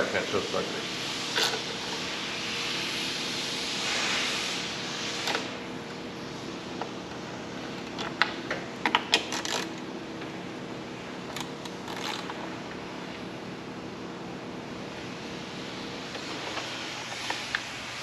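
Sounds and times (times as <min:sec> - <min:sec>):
steady low hum: 0:00.0 - 0:18.0
hand tools clicking and rattling: 0:11.3 - 0:12.3.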